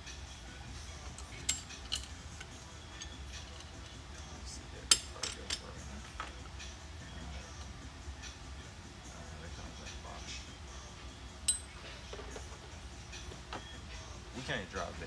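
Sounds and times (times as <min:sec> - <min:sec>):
metal tools clinking: 0:01.0 - 0:03.9, 0:04.9 - 0:05.8, 0:11.5 - 0:12.5.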